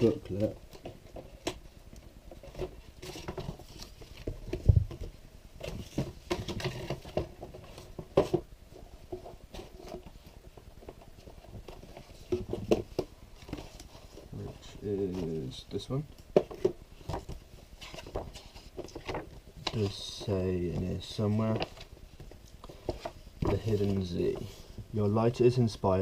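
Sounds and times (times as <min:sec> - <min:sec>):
paper pages rustling: 0:02.5 - 0:04.8, 0:16.5 - 0:24.8.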